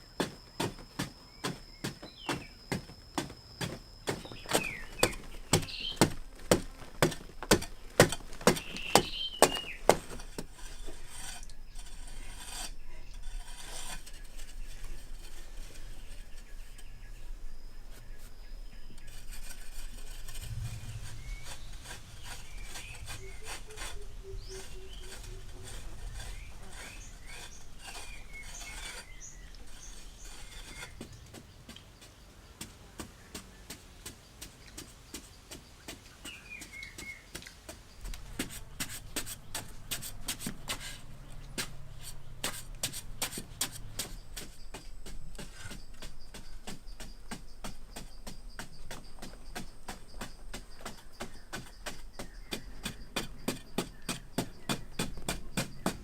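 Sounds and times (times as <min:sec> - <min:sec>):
birds chirping: 0:00.0 - 0:56.0
rapid scraping: 0:03.6 - 0:31.4, 0:38.0 - 0:56.0
sharp rhythmic knocks: 0:41.5 - 0:56.0.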